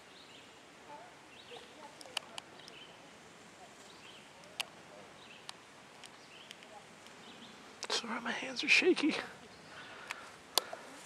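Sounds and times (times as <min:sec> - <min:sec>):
low steady hiss: 0:00.0 - 0:11.0
sharp clicks: 0:10.0 - 0:10.8.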